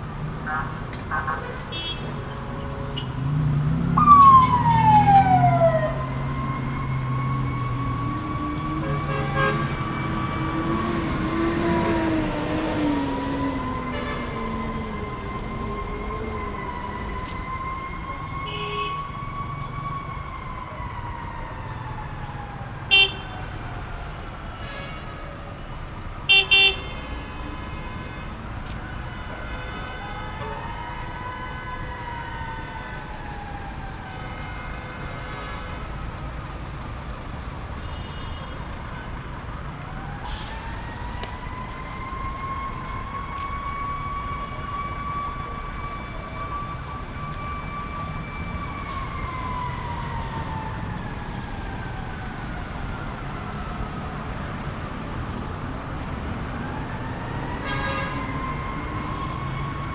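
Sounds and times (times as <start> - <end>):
street traffic rumble: 0.0 - 59.9
emergency siren wailing: 0.1 - 59.9
car horn: 0.5 - 3.2, 8.8 - 9.9, 13.9 - 14.6, 18.4 - 19.1, 22.9 - 23.3, 24.6 - 25.2, 26.3 - 28.3, 34.4 - 35.8, 57.6 - 58.4.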